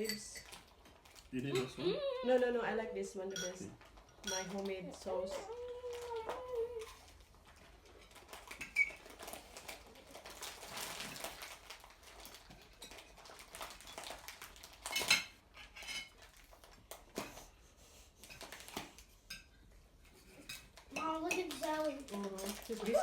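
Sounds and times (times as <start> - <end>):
cutlery clinking on plates: 14.9 - 16.2.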